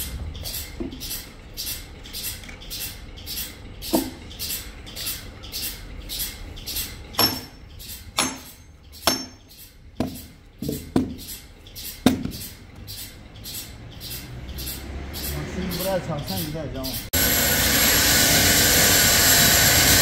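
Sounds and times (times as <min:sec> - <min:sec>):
rhythmic machine swishing: 0:00.0 - 0:05.8
wood and metal knocks: 0:03.9 - 0:04.2, 0:07.2 - 0:07.6, 0:08.2 - 0:11.4, 0:12.0 - 0:12.5.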